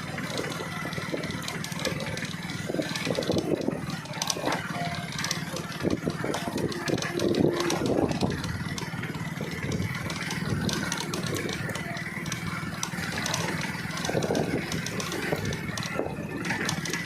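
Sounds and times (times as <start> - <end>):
motorcycle engine running: 0.0 - 17.0
suspension knocking and clattering: 0.0 - 17.0.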